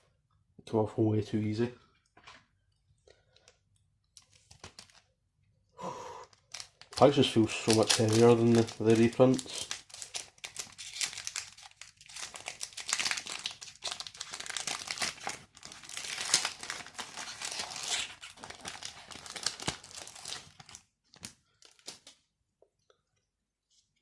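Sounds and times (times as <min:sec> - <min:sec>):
foil wrapper crinkling and tearing: 0:04.2 - 0:05.1, 0:06.2 - 0:22.2.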